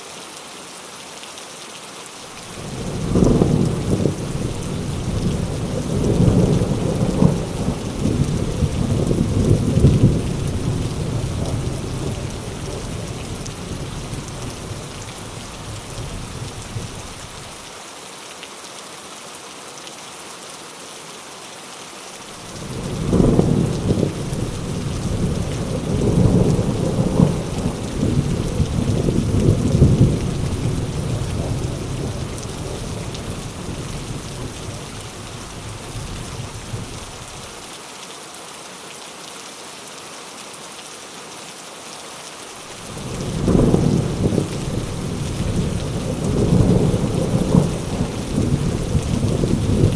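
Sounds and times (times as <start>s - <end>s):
heavy rain: 0.0s - 49.9s
thunder rumbling: 2.6s - 17.4s, 22.5s - 37.4s, 42.7s - 49.9s.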